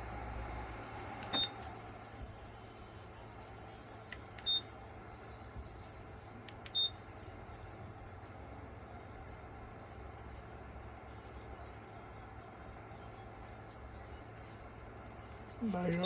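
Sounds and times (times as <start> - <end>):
steady low hum: 0.0 - 16.0
heater short high beeps: 1.3 - 1.6, 4.4 - 4.7, 6.7 - 7.0.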